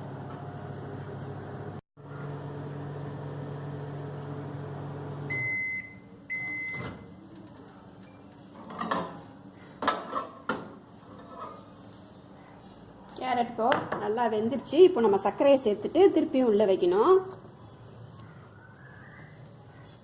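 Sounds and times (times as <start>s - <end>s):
microwave oven humming: 0.0s - 9.8s
microwave beeps: 5.0s - 8.3s.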